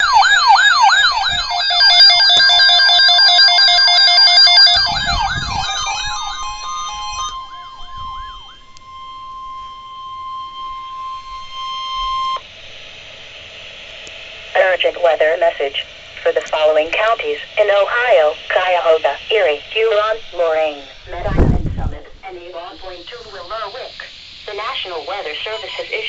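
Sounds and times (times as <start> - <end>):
alert tone: 0.0 - 12.4
electronic sirens yelping: 0.0 - 12.4, 14.6 - 21.4, 22.5 - 26.0.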